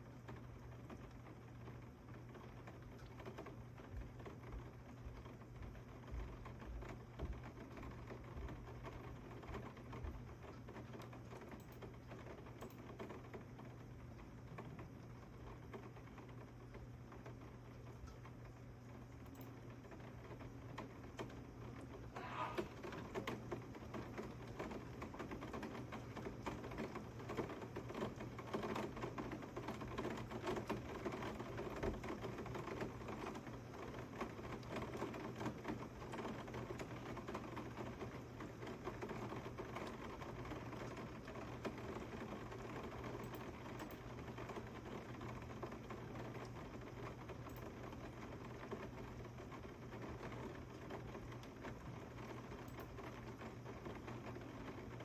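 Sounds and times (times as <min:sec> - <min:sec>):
steady low hum: 0:21.9 - 0:24.7.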